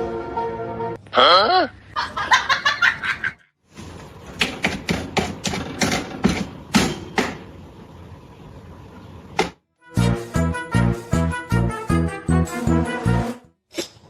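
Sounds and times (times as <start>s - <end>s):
sharp knocks: 4.4s - 7.4s, 9.4s - 9.6s.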